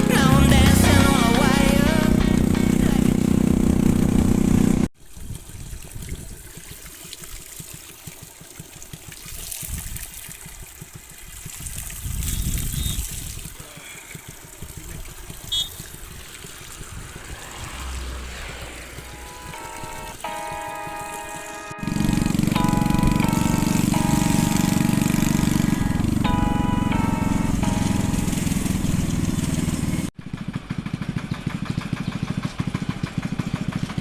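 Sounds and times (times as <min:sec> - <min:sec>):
background music: 0:00.0 - 0:03.8, 0:19.0 - 0:29.0
low rumbles: 0:00.0 - 0:04.9, 0:14.6 - 0:20.4
steady rushing noise: 0:16.0 - 0:25.7.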